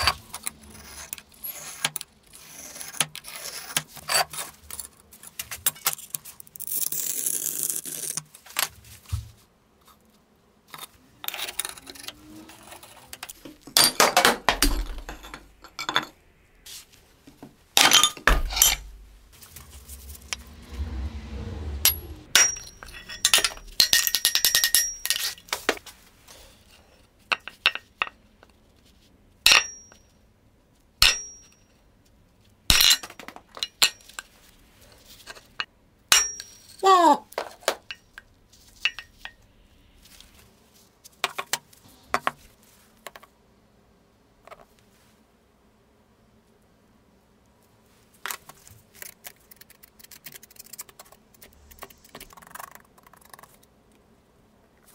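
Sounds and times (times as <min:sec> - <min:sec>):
ceramic pieces clinking: 0:13.7 - 0:16.2, 0:17.8 - 0:18.9, 0:22.4 - 0:25.5, 0:32.7 - 0:34.2, 0:38.8 - 0:39.3.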